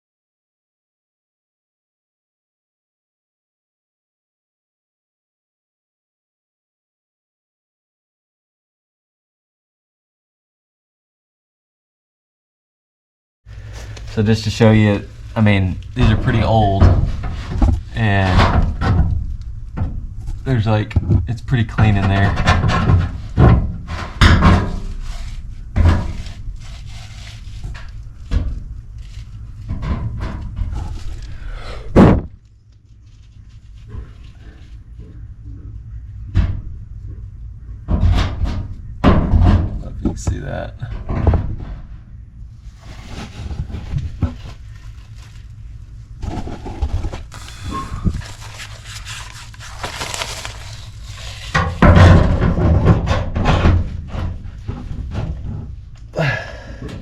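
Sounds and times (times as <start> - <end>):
low rumble: 13.6 - 40.1
sheet metal duct knocks and thuds: 13.8 - 31.3, 31.9 - 32.4, 37.9 - 41.9, 46.2 - 57.0.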